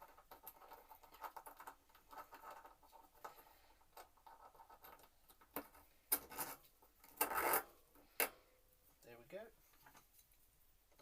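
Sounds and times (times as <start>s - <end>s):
hand tool scraping on bike hub: 6.2s - 7.8s.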